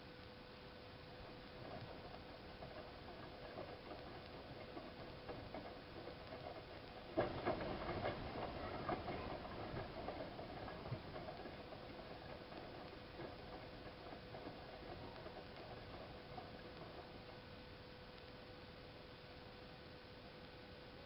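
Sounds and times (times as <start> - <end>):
faint steady hum: 0.0 - 21.0
washing machine drum tumbling: 1.6 - 17.0.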